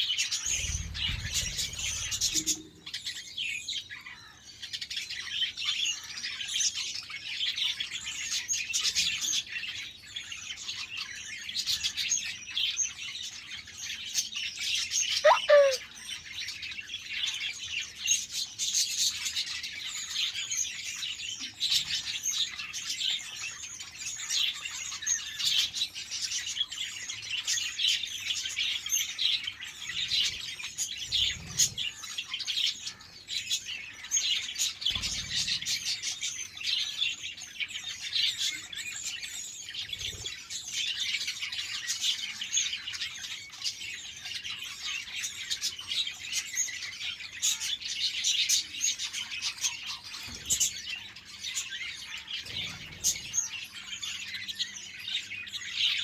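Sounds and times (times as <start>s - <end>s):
budgerigars chirping: 15.2s - 15.8s.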